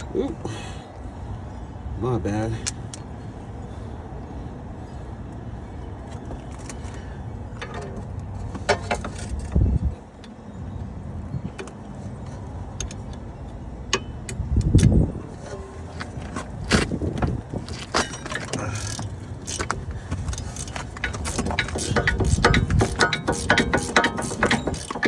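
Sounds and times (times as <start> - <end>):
metal tools clinking: 0.0 - 0.2, 2.6 - 3.1, 17.8 - 25.0.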